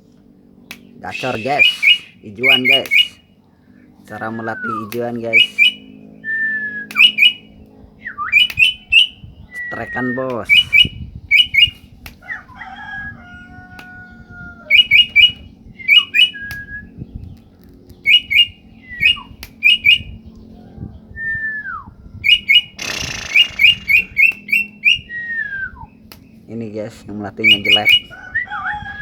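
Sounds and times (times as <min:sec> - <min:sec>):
bird chirping and whistling: 0:01.1 - 0:03.2, 0:04.1 - 0:12.5, 0:14.7 - 0:17.3, 0:18.0 - 0:20.2, 0:21.2 - 0:26.1, 0:27.4 - 0:28.6.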